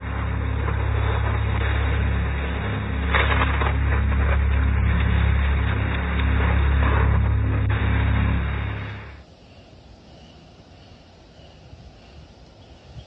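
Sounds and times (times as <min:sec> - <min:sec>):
rain hissing: 0:00.0 - 0:09.2
steady low hum: 0:00.0 - 0:13.0.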